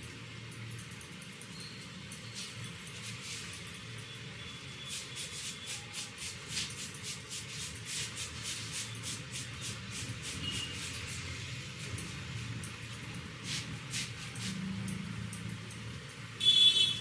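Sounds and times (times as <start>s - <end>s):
hands rubbing hair and scalp: 2.3s - 3.8s, 4.9s - 12.2s, 13.0s - 14.6s.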